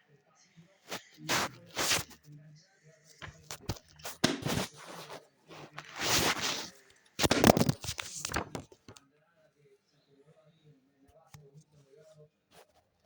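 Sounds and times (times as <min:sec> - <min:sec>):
rustles of objects being moved: 0:00.9 - 0:02.2, 0:03.2 - 0:09.0.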